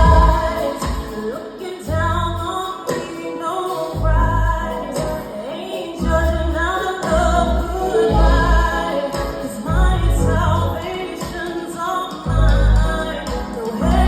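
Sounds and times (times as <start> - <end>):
deep bass notes: 0.0 - 0.5, 1.9 - 2.4, 4.0 - 4.7, 6.0 - 8.8, 9.7 - 10.8, 12.3 - 13.2, 13.8 - 14.0
woman singing: 0.0 - 14.0.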